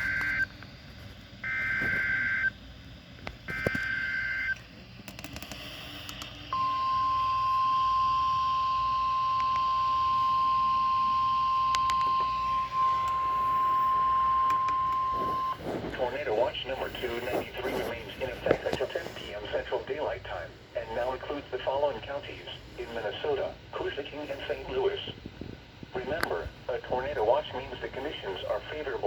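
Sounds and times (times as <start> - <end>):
two-tone data warble: 0.0 - 0.5, 1.4 - 2.6, 3.5 - 4.6, 6.6 - 15.6
radio hiss: 1.4 - 2.6, 3.3 - 4.6, 10.1 - 29.0
steady single-pitch alert tone: 6.6 - 15.6.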